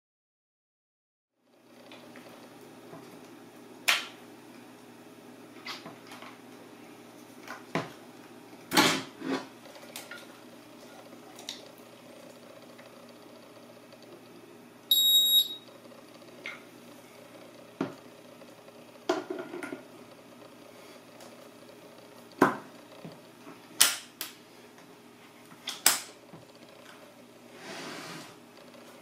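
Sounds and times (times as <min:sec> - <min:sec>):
high-pitched electronic beep: 0:14.9 - 0:15.6.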